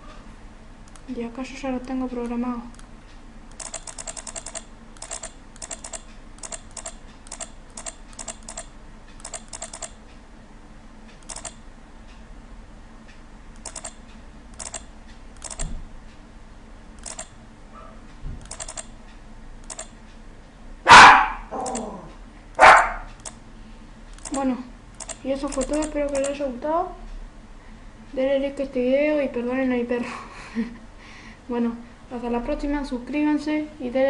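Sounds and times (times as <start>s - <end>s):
computer mouse clicking: 0.8s - 1.1s, 3.5s - 10.0s, 11.2s - 11.6s, 13.6s - 15.7s, 17.0s - 17.4s, 18.4s - 18.9s, 19.6s - 19.9s, 21.6s - 21.8s, 23.1s - 23.4s, 24.1s - 26.4s.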